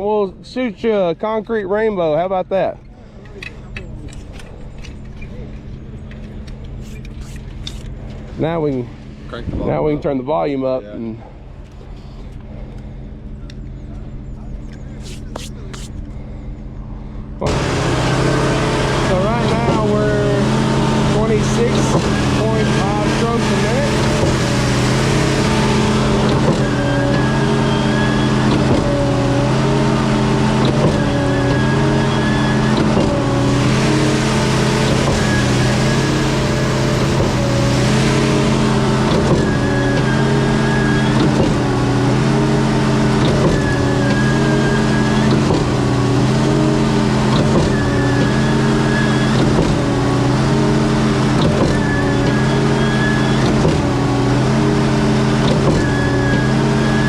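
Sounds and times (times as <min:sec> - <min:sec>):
pump engine running under load: 0:11.4 - 0:57.0
short rushing noises: 0:14.9 - 0:16.0.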